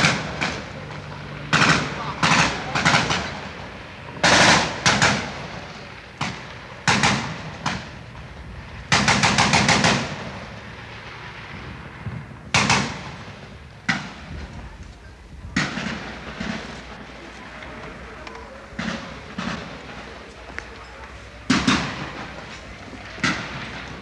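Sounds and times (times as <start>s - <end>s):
rapid burst of gunfire: 1.5s - 7.8s, 8.9s - 10.5s, 12.5s - 14.2s, 18.7s - 20.3s, 21.5s - 24.0s
gunshots with echoing tail: 21.4s - 22.5s.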